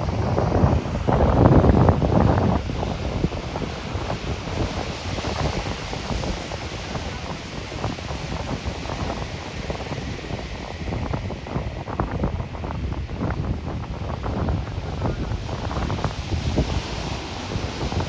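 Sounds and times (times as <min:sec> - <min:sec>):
ocean surf hissing: 0:00.0 - 0:11.0
wind buffeting microphone: 0:00.0 - 0:18.0.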